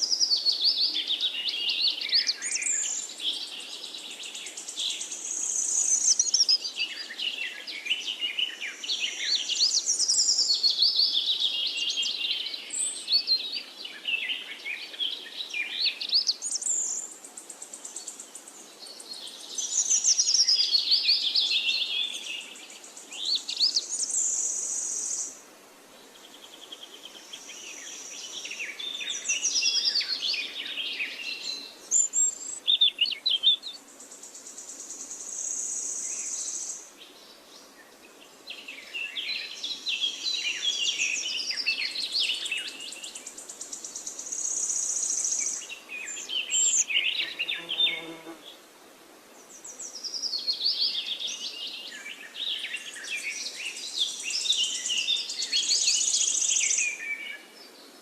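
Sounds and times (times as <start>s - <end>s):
songbirds warbling: 26.0s - 48.6s.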